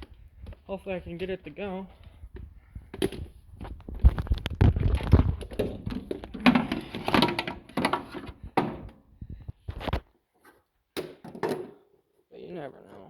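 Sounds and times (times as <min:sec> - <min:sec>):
objects knocking and rattling: 0:02.3 - 0:12.0.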